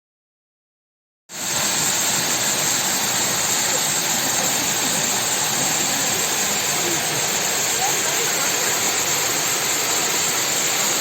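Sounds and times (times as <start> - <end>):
waterfall rushing: 1.3 - 11.0.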